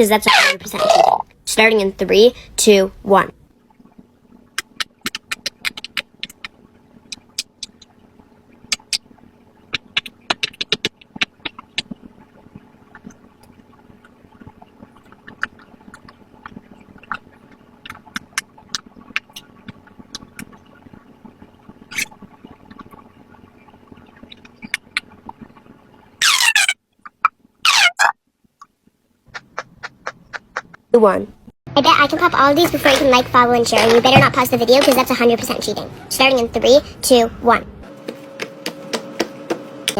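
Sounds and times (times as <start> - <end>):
fidget toy bubbles popping: 4.5 - 8.0, 9.7 - 13.3.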